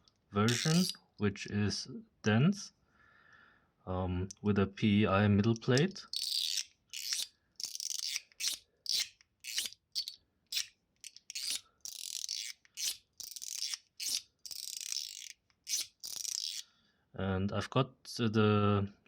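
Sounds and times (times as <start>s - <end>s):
fidget slider scraping slides: 0.5s - 1.0s, 5.8s - 16.6s.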